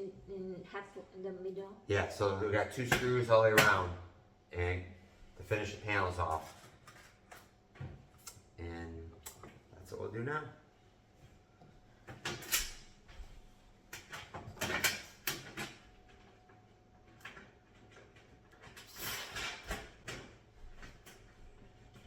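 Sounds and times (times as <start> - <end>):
metal panels and screws rattling: 13.9 - 15.9.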